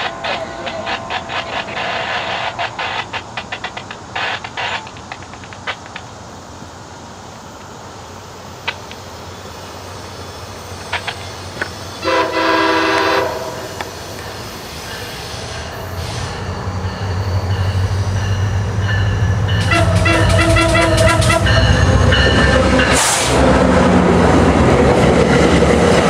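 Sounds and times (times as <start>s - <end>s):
train wheels clattering: 0.0s - 6.4s, 10.7s - 23.6s
train rumble: 0.0s - 26.0s
train horn chord: 12.0s - 14.0s, 19.6s - 22.2s.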